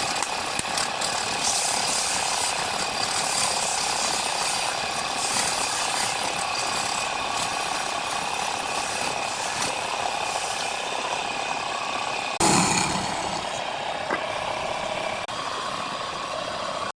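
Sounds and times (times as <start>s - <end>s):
wood lathe whine: 0.0s - 16.8s
scraping hiss: 12.4s - 14.3s.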